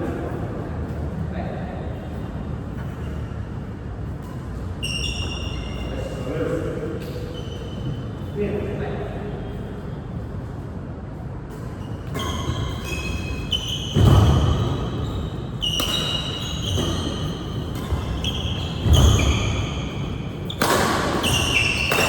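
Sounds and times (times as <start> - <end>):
shoes squeaking on court floor: 2.0 - 8.4, 11.5 - 22.0.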